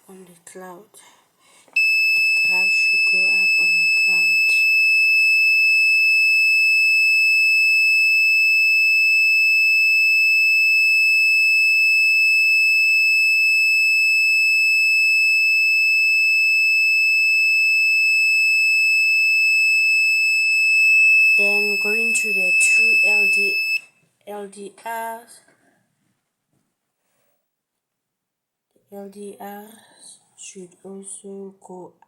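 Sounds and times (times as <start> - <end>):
high-pitched electronic buzzer tone: 1.8 - 23.9.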